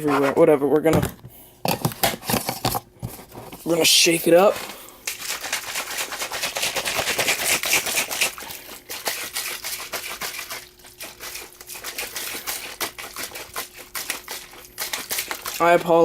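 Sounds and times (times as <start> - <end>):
plastic shaker cup rattling: 3.6 - 16.0.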